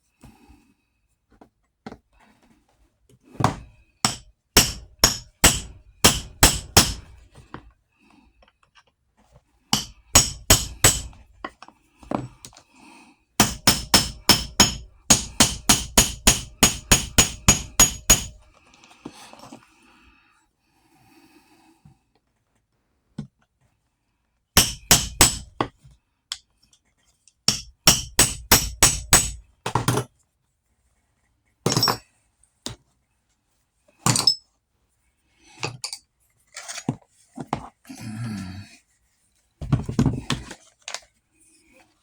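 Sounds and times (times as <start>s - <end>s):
hammer blows: 3.5s - 7.2s, 9.8s - 11.2s, 13.4s - 18.4s.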